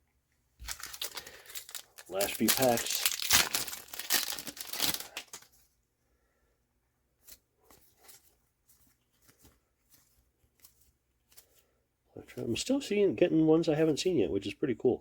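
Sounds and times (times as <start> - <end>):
wrapper tearing and crinkling: 0.6 - 5.6.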